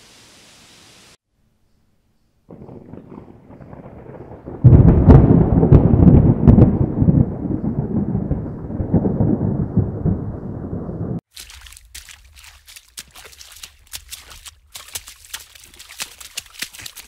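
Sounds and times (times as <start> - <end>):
thunder cracks: 2.5 - 11.2
thunder rumbling: 2.5 - 11.2.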